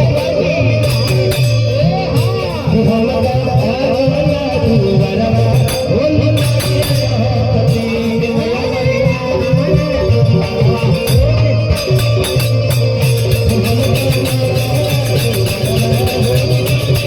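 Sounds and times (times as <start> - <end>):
person singing: 0.0 - 12.6
tambourine-like percussion: 0.0 - 17.0
bass line: 4.6 - 17.0
steady beat: 9.7 - 17.0.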